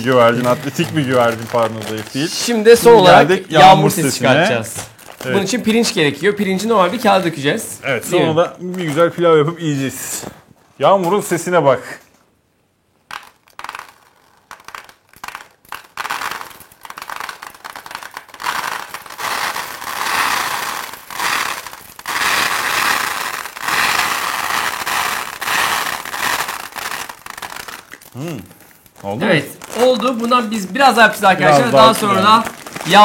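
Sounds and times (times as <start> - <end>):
rice grains pouring on paper: 0.0 - 3.4, 13.1 - 33.0.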